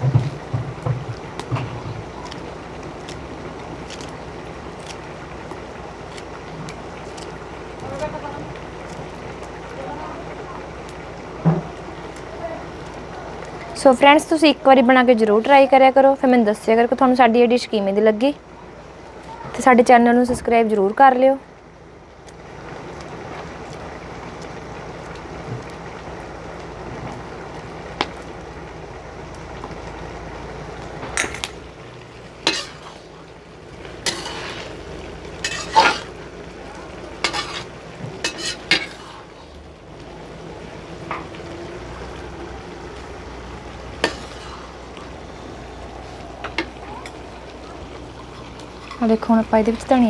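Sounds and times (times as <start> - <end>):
pan hissing: 32.3 - 36.5, 37.1 - 39.6, 43.7 - 47.4
metal spoon scraping a pan: 32.4 - 33.1, 34.0 - 34.8, 35.4 - 36.2, 37.2 - 39.4, 44.0 - 44.8.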